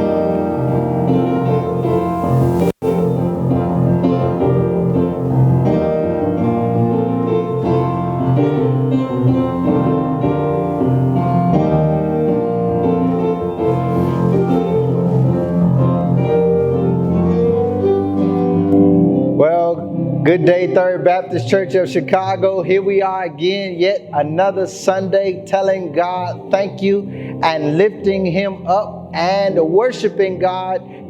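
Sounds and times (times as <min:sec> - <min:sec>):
instrumental piano music: 0:00.0 - 0:31.0.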